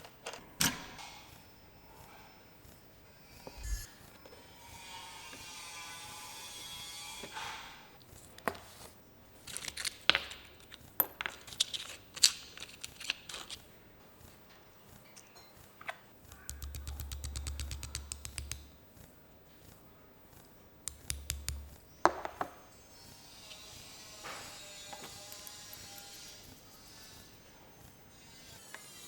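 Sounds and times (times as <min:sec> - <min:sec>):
low hum with fast ticking: 0:16.4 - 0:18.7.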